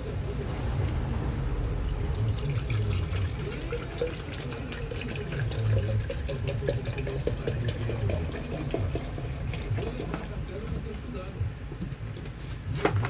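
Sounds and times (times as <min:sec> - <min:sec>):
tap water filling container: 0:01.9 - 0:10.4.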